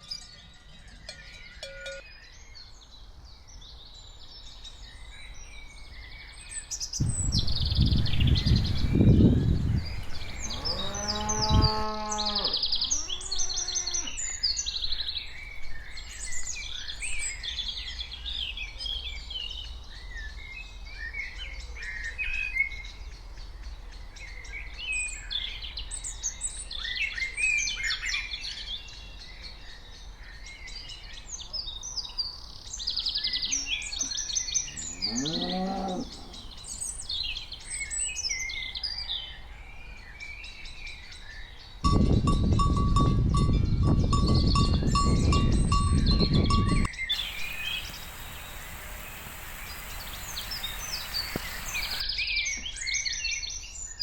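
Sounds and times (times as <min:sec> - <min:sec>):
small birds chirping and singing: 0:00.0 - 0:41.8, 0:43.5 - 0:54.0
low rumble: 0:07.0 - 0:10.7
cow mooing: 0:10.1 - 0:14.2, 0:34.6 - 0:36.6.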